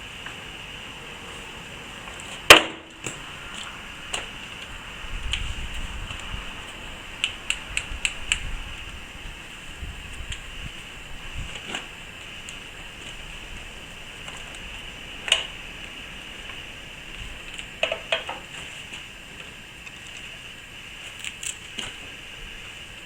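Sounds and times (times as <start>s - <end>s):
steady hiss: 0.0s - 23.0s
handling knocks and clicks: 17.6s - 18.5s.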